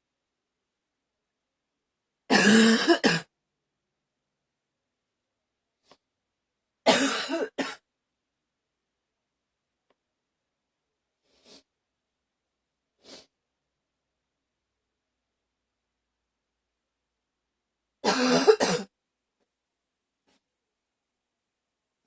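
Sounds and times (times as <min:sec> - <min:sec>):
woman coughing: 0:02.3 - 0:03.3, 0:06.9 - 0:07.8, 0:18.0 - 0:18.9.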